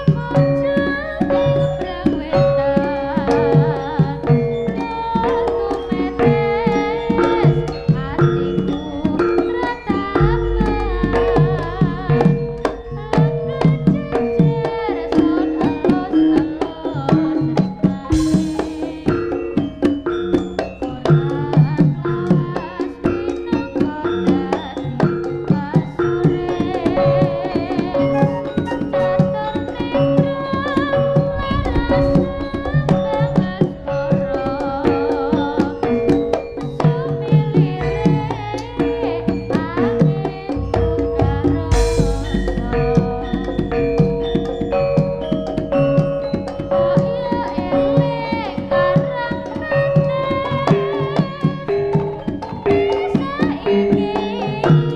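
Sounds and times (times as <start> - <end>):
long held pitched tones: 0.0 - 16.6, 26.9 - 35.6, 36.7 - 51.8
hand drums beating: 0.0 - 54.9.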